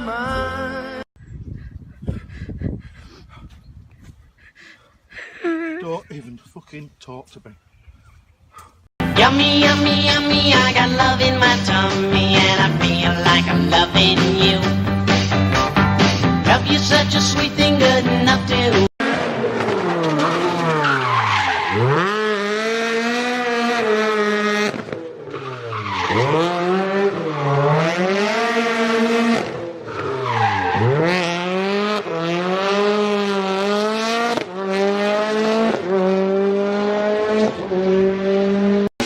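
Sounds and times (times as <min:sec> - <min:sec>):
engine revving: 0:09.0 - 0:39.0.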